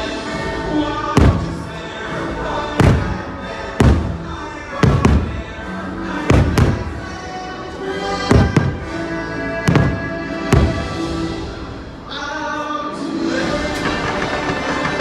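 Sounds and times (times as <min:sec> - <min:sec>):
loud orchestral music: 0:00.0 - 0:15.0
fireworks booming: 0:01.2 - 0:01.9, 0:02.6 - 0:09.1, 0:09.7 - 0:11.6.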